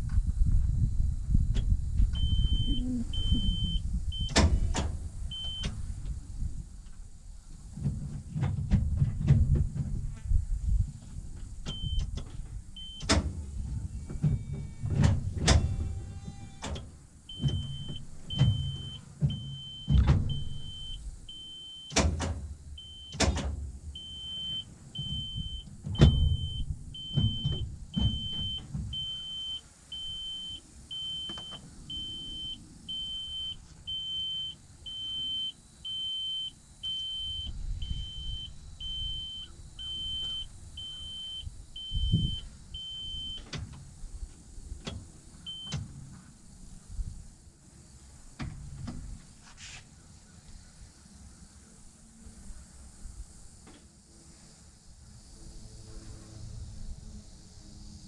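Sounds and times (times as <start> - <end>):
short low rumbles: 0.0 - 16.4
warning beeper short high beeps: 2.2 - 4.4, 24.0 - 43.4.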